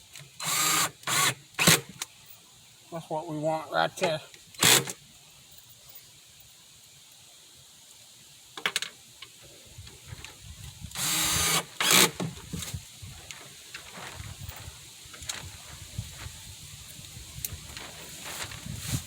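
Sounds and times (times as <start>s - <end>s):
screwdriver turning a screw: 4.6s - 5.0s, 11.0s - 12.2s.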